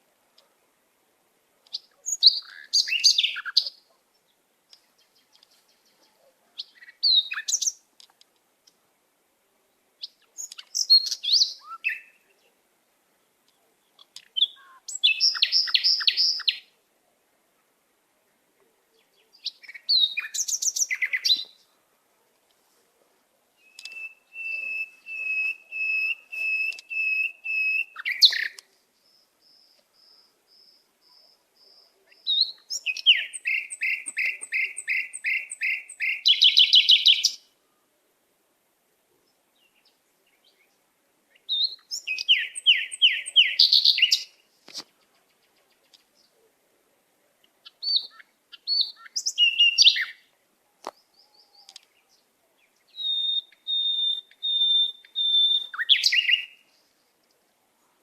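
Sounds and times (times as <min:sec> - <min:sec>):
songbirds whistling: 0:01.7 - 0:03.8, 0:06.6 - 0:07.8, 0:10.0 - 0:12.3, 0:14.0 - 0:16.7, 0:19.2 - 0:21.6, 0:23.6 - 0:37.4, 0:41.4 - 0:45.0, 0:47.7 - 0:50.3, 0:50.9 - 0:56.6.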